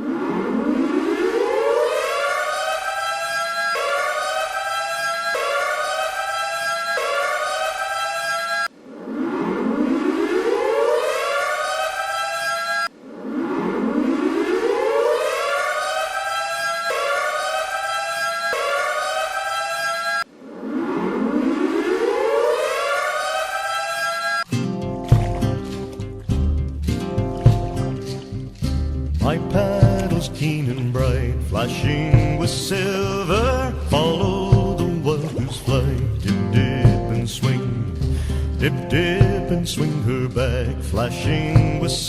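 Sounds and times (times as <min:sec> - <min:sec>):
siren-like goal horn wail: 0:00.0 - 0:24.5.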